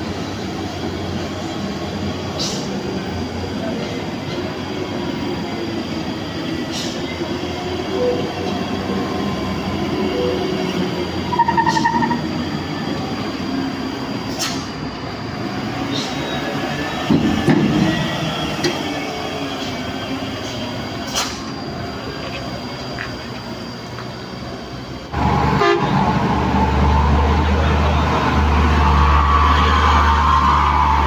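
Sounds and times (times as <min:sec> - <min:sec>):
heavy diesel engines labouring: 0:00.0 - 0:31.0
short high-pitched tone: 0:11.3 - 0:12.5.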